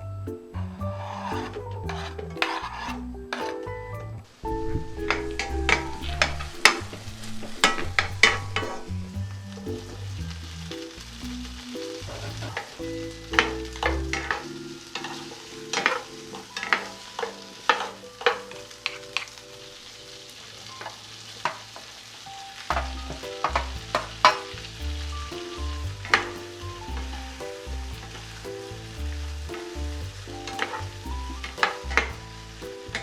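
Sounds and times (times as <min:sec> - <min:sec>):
food sizzling in frying pan: 0:14.4 - 0:33.0.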